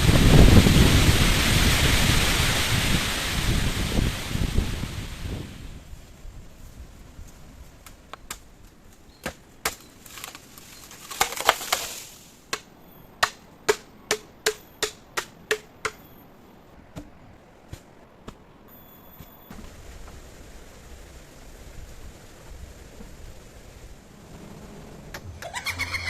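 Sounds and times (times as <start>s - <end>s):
rustling burst: 9.8s - 12.5s, 19.5s - 26.0s
sharp knocks: 12.5s - 16.1s.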